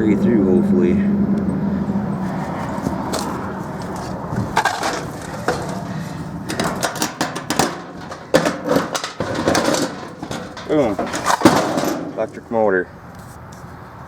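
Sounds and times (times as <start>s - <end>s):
metal scraping and rattling: 1.7s - 12.9s
sharp metal clank: 2.6s - 12.6s.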